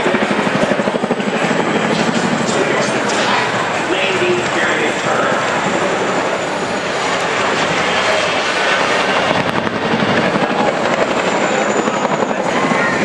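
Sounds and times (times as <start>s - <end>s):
helicopter engine noise: 0.0s - 13.0s
helicopter rotor blades chopping: 0.0s - 13.0s.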